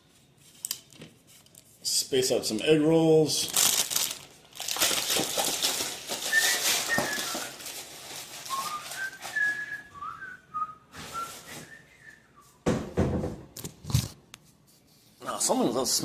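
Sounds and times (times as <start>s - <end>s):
packaging rustling: 3.2s - 10.3s
person whistling a tune: 6.2s - 7.6s, 8.5s - 12.6s.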